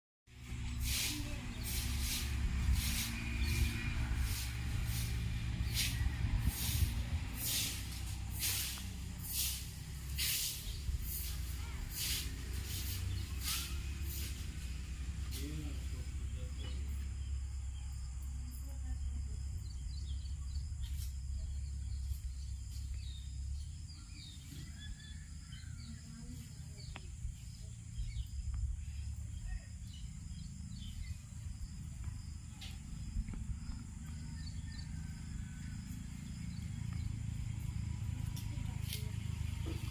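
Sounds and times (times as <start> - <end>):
low rumble: 0.3 - 11.9, 26.8 - 39.9
insect drone: 0.4 - 39.9.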